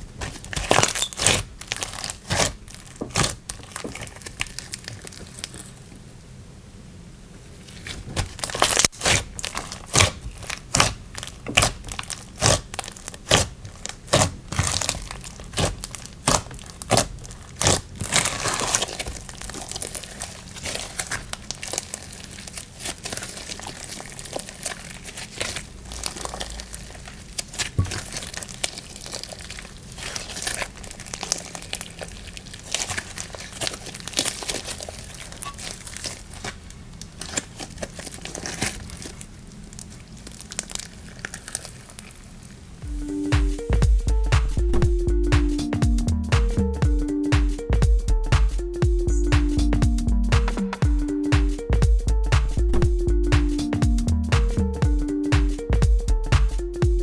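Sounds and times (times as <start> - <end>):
slime crackling and popping: 0.0 - 5.9, 7.8 - 42.6.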